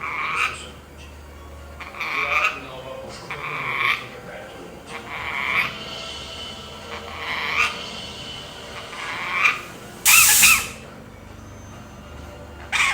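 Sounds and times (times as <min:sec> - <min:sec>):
shrill bird screech: 0:05.0 - 0:10.9
parrot mimicking cough: 0:09.3 - 0:10.8.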